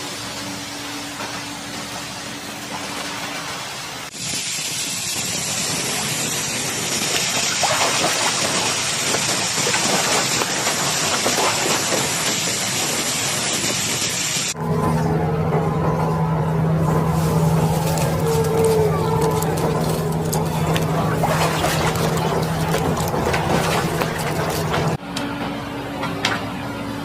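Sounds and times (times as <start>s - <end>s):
water rushing and spraying: 2.5s - 14.6s, 21.0s - 25.0s.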